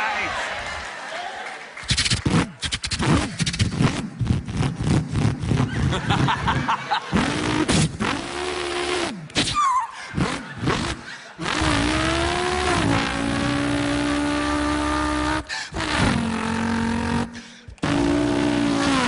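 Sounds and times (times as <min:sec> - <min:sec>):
man imitating engine revving: 0:07.1 - 0:09.3, 0:10.1 - 0:19.0.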